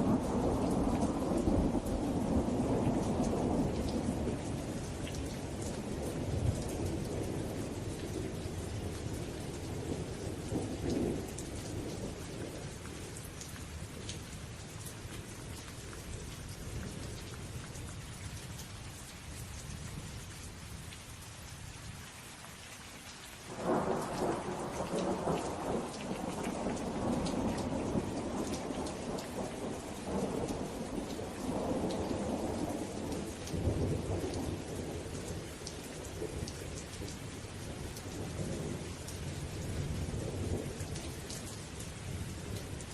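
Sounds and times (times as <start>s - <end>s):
heavy rain: 0.0s - 42.9s
loud thunderclap: 23.5s - 34.2s
rolling thunder: 23.5s - 35.1s.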